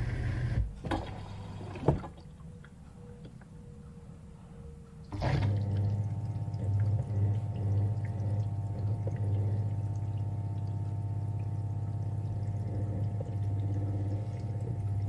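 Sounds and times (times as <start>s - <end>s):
dishwasher humming: 5.1s - 15.0s.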